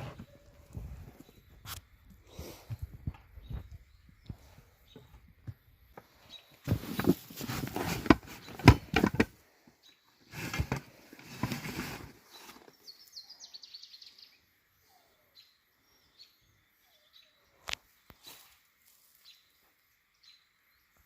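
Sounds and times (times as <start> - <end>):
rustling and knocking with clicks: 5.0 - 9.3.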